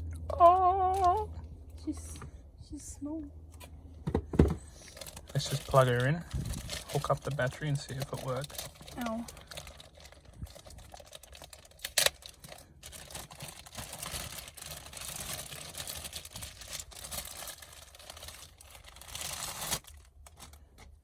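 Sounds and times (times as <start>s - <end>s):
plastic plugs and cables rustling: 4.4s - 21.0s.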